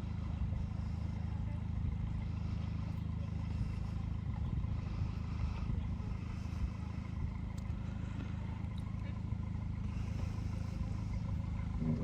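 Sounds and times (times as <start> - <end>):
engine running at low speed: 0.0 - 12.0.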